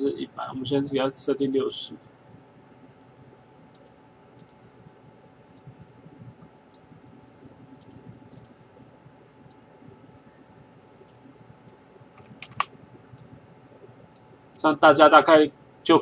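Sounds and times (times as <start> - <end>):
low room noise: 0.0 - 16.0
computer mouse clicks: 3.7 - 4.6, 7.8 - 8.6, 11.0 - 13.3.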